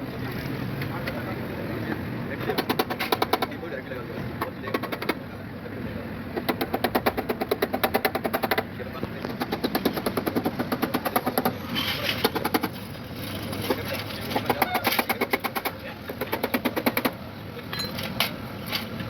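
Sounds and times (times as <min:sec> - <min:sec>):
rapid metal-on-metal tapping: 0:06.4 - 0:12.8, 0:13.7 - 0:17.2.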